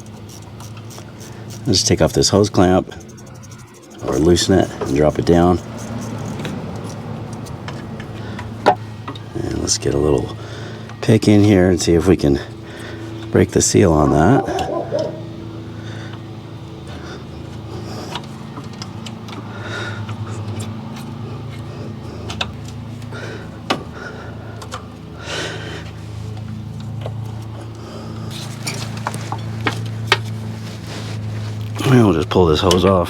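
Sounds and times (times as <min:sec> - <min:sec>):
steady low hum: 0:12.2 - 0:16.1.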